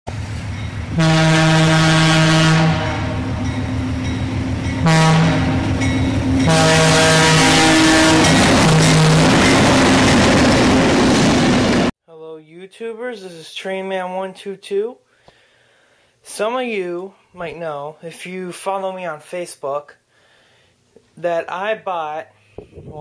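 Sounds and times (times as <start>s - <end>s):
train rumbling: 0.1s - 11.9s
locomotive air horn blasts: 0.9s - 3.4s, 4.8s - 5.8s, 6.4s - 9.4s.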